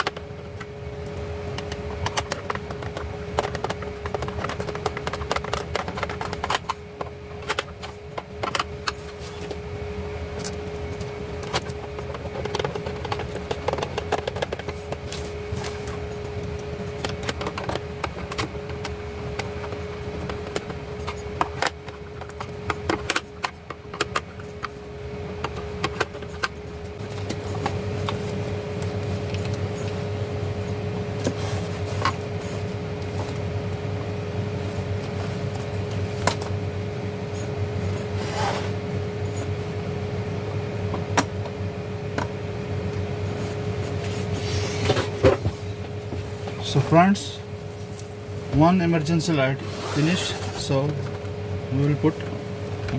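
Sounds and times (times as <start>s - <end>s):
steady background hum: 0.0s - 52.9s
plastic parts clicking and rattling: 1.6s - 9.0s, 11.4s - 15.0s.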